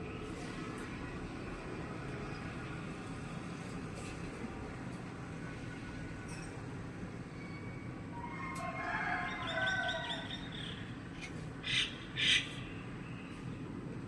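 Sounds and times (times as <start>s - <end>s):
harsh bird calls: 9.2s - 13.4s.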